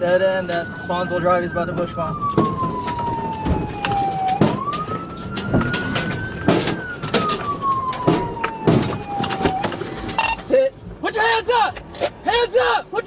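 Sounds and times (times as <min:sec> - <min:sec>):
police siren wailing: 0:00.0 - 0:13.0
vehicle noise: 0:00.0 - 0:13.0
irregular knocks and thumps: 0:01.8 - 0:11.1.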